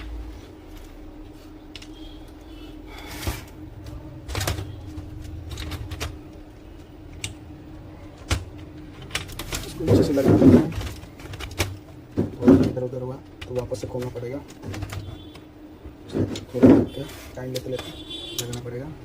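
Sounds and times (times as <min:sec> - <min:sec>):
faint steady hum: 0:00.0 - 0:19.0
low rumble of parts shifting: 0:00.0 - 0:19.0
plastic parts clicking and knocking: 0:03.8 - 0:15.5, 0:16.1 - 0:18.8.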